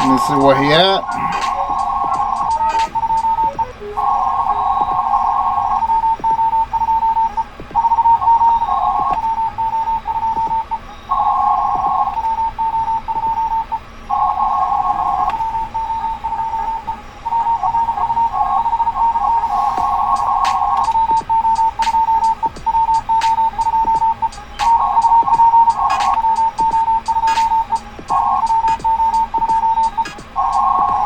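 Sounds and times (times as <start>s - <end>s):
morse code beeps: 0.0s - 31.0s
radio band hiss: 0.0s - 31.0s
several morse stations calling: 0.0s - 31.0s.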